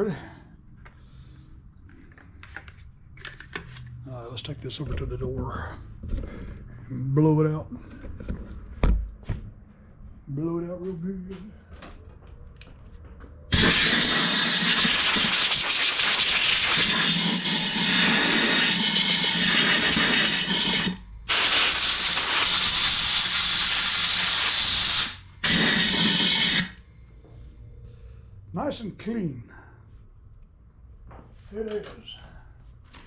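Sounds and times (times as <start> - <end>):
compressed air blow gun hissing: 13.5 - 26.8.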